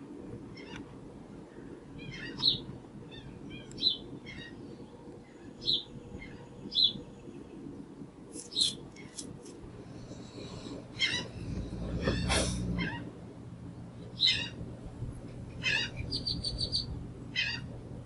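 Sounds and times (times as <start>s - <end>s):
steady low hum: 0.0s - 18.0s
birds chirping: 1.5s - 7.7s, 8.4s - 9.2s, 9.8s - 13.1s, 13.7s - 14.6s, 15.3s - 17.8s.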